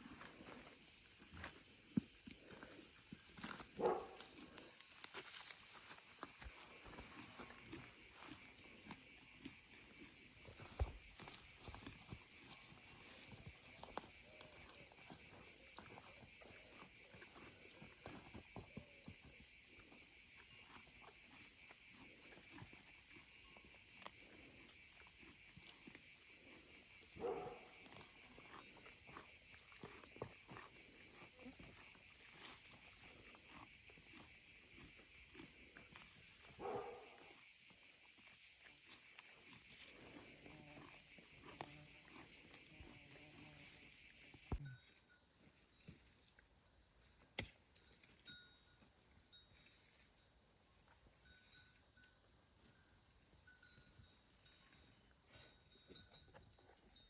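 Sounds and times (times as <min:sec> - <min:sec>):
small footsteps and rustles: 0:00.0 - 0:09.4, 0:10.3 - 0:18.2
crickets chirping: 0:00.0 - 0:57.0.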